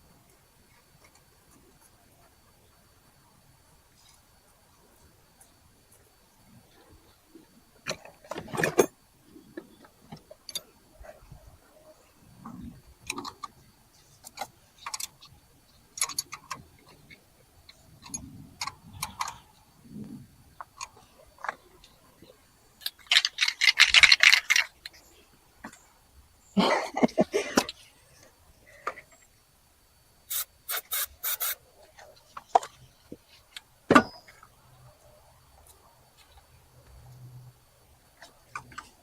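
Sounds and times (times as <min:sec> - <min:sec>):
hand tools and metal parts clinking: 0:07.9 - 0:08.9, 0:22.8 - 0:25.8, 0:30.3 - 0:32.8.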